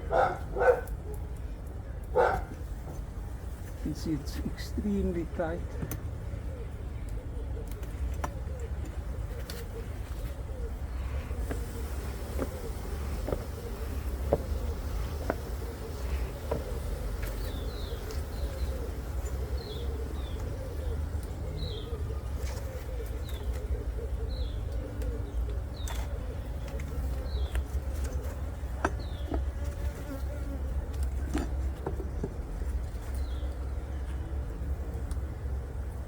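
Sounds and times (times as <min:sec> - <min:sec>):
honeybees buzzing: 0:10.7 - 0:22.4.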